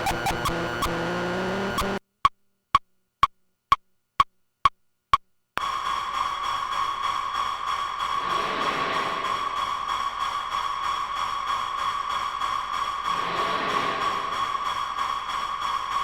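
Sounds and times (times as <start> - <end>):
hissy electronic texture with clicks: 0.0 - 2.0.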